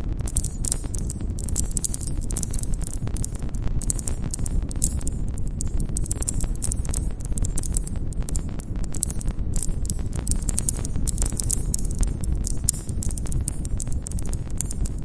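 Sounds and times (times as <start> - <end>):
campfire crackling: 9.0 - 15.0.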